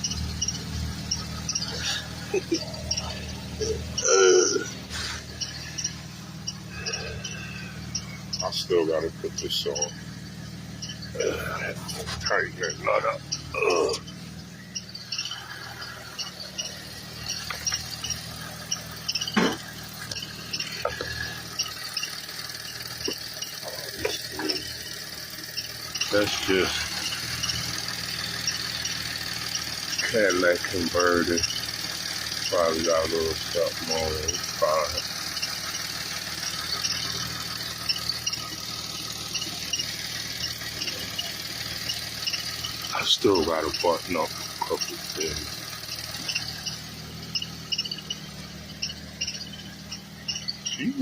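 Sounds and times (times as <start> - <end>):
car engine idling: 0.0 - 51.0
high squeaky chirps: 0.0 - 51.0
metallic clank of tools: 19.2 - 19.7.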